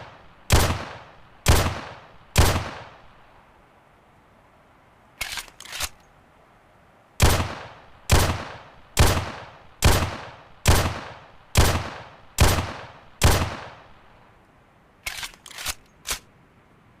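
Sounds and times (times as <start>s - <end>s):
pistol shots with echo: 0.0s - 3.1s, 7.2s - 14.0s
short clicks: 5.2s - 6.1s, 15.0s - 16.3s.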